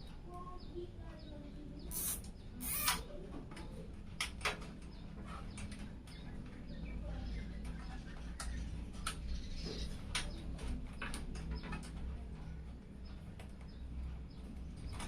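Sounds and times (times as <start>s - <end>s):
sharp clicks: 1.9s - 3.0s.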